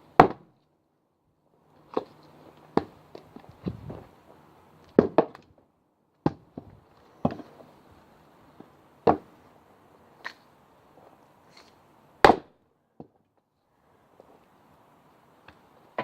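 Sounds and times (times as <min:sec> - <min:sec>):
axe chopping log: 0:00.2 - 0:00.5, 0:02.7 - 0:02.9, 0:04.9 - 0:05.4, 0:06.2 - 0:07.5, 0:09.0 - 0:09.3, 0:12.2 - 0:13.1.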